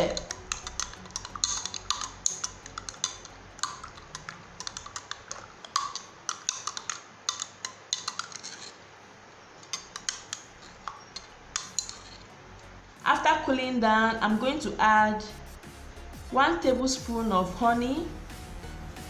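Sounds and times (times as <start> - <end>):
teaspoon clinking against glass: 0.0 - 8.8, 9.6 - 12.3.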